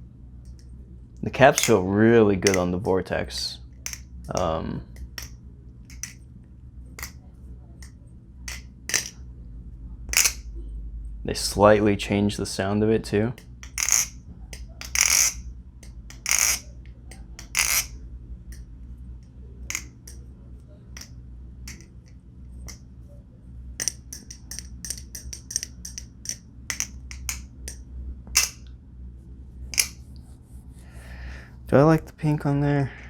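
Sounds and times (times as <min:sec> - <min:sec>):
butterfly knife clicking: 0:05.9 - 0:06.2, 0:10.2 - 0:10.4, 0:13.6 - 0:15.4, 0:16.1 - 0:17.9, 0:21.7 - 0:21.9, 0:23.8 - 0:27.8.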